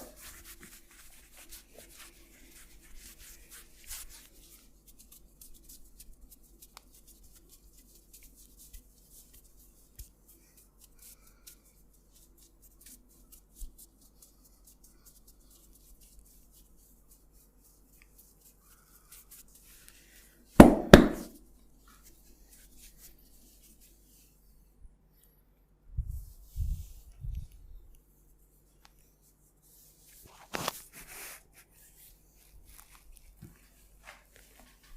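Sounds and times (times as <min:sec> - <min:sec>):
fingers rustling on hair: 0:00.0 - 0:24.6, 0:26.1 - 0:34.9
sharp smacks: 0:20.6 - 0:21.4.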